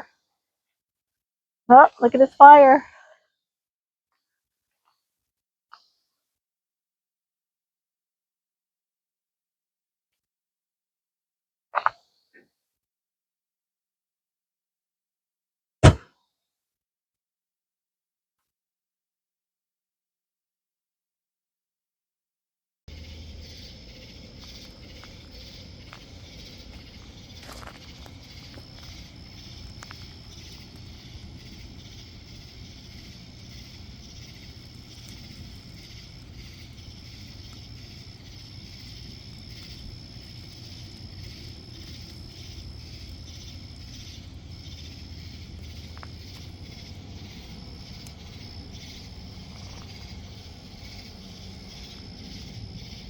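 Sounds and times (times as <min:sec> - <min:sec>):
insects trilling: 0:22.9 - 0:53.0
low steady rumble: 0:22.9 - 0:53.0.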